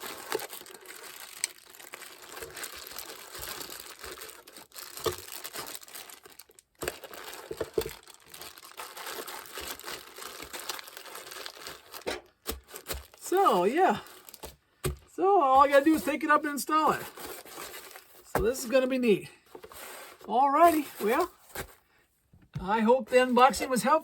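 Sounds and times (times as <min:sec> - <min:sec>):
plastic packaging crinkling: 0:00.0 - 0:21.8.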